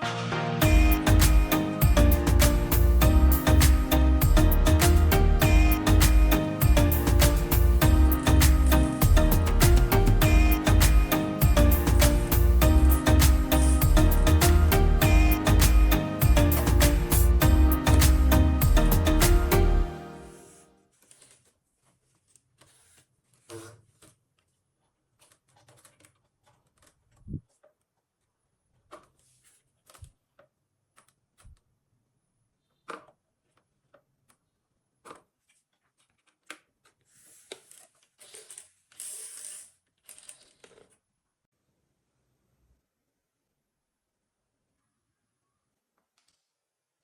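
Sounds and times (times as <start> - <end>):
rustling: 20.9 - 31.6.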